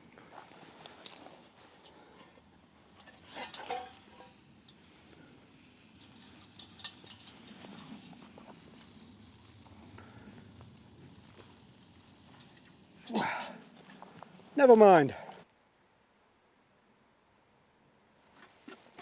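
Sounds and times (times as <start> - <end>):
metal camp gear clinking: 3.0 - 5.2, 6.0 - 8.5.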